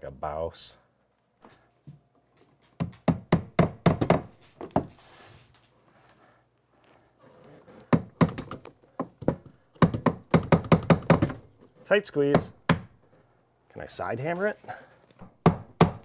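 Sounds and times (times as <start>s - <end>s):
hammer striking wood: 2.8s - 4.9s, 7.9s - 11.6s, 12.3s - 13.0s, 15.2s - 16.0s.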